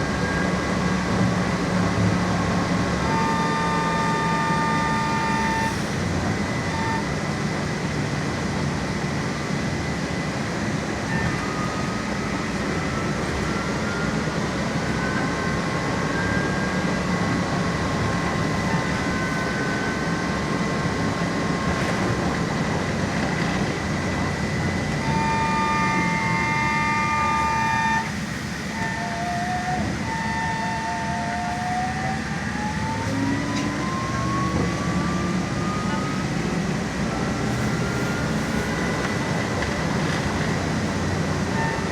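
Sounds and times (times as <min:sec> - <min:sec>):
trolleybus rolling noise: 0:00.0 - 0:41.9
electric motor whine: 0:24.4 - 0:40.6.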